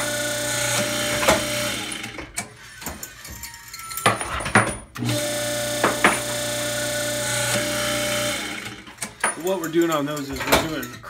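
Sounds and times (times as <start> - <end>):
crimping machine hum: 0.0 - 2.2, 5.0 - 8.9
metallic clicks and knocks: 9.0 - 11.0.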